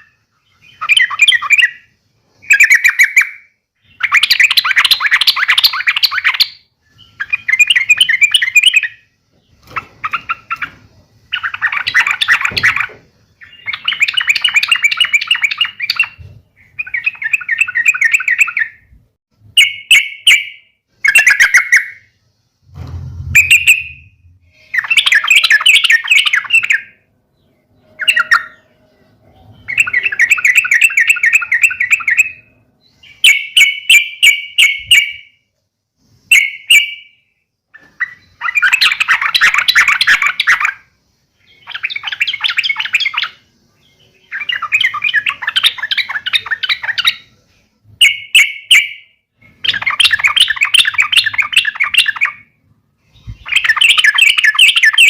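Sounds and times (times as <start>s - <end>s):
bird chattering song: 0.0s - 18.9s, 19.6s - 22.1s, 23.3s - 35.4s, 36.3s - 55.0s.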